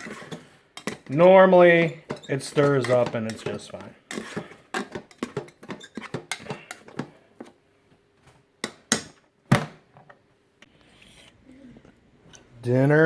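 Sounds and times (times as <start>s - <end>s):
utensil scraping a pot: 0.0s - 7.6s, 10.8s - 11.6s.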